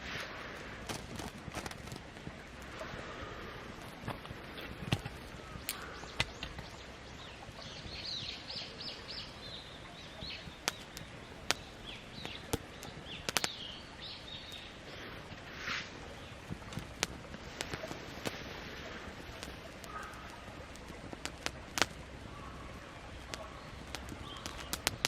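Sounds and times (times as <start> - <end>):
outdoor background hiss: 0.0 - 25.0
songbird singing: 2.4 - 21.0, 22.0 - 25.0
sharp clicks and snaps: 3.8 - 6.8, 10.2 - 13.7, 16.4 - 18.5, 19.2 - 22.1, 23.0 - 25.0.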